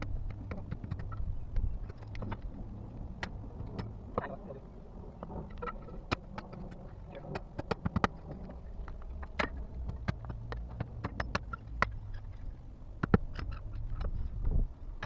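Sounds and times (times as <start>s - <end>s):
irregular knocks clicks and scrapes: 0.0s - 4.3s, 5.2s - 15.0s.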